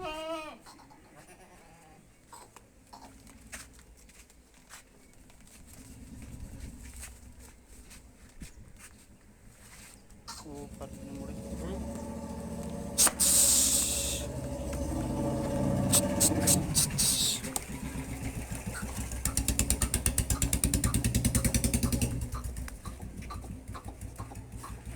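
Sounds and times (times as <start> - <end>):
engine thudding: 5.6 - 7.8, 10.3 - 24.9
hiss burst: 10.6 - 17.6
sharp clicks: 11.9 - 17.8.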